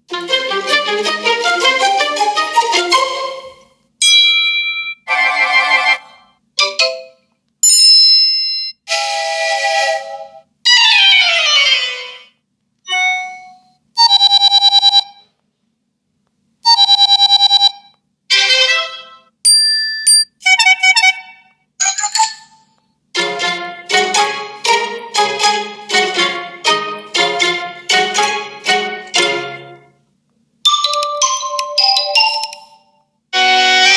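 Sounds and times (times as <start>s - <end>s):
phone tones: 12.9s - 15.3s, 16.7s - 17.9s.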